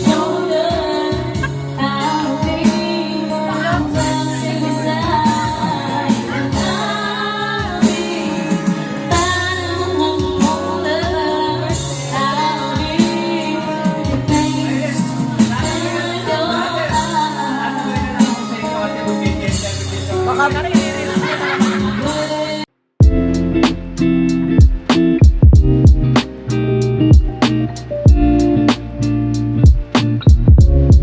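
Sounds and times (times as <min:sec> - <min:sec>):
steady beat and bass: 0:00.0 - 0:02.9, 0:13.9 - 0:31.0
song with woman singing: 0:00.0 - 0:18.4, 0:21.8 - 0:22.7.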